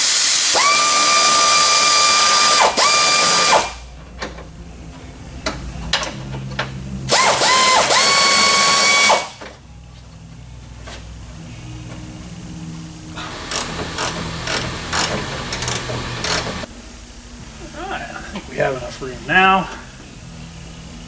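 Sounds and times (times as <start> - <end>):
pneumatic air ratchet whining: 0.0 - 3.9, 7.1 - 9.4, 13.2 - 16.7
exhaust air hissing: 0.0 - 21.0.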